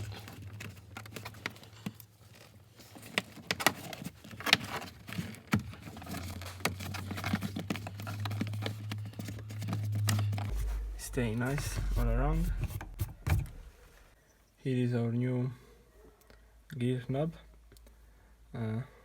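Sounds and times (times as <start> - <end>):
low steady hum: 6.3 - 14.3.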